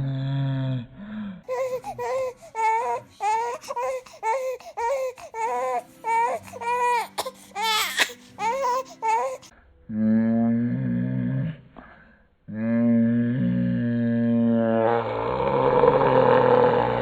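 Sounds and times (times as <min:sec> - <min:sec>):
infant crying: 0:01.5 - 0:09.5.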